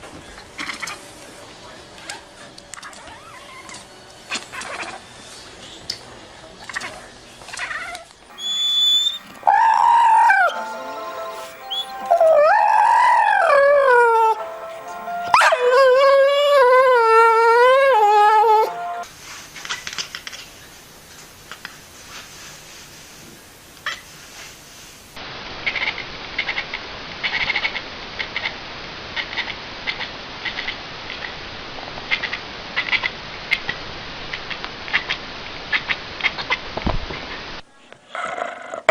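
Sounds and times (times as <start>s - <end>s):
animal high chirping calls: 8.3s - 10.6s
dog howling: 8.3s - 10.7s, 11.7s - 14.5s, 15.2s - 19.0s
short high steady tone: 8.3s - 16.9s, 17.6s - 19.1s
faint hiss: 18.7s - 26.2s.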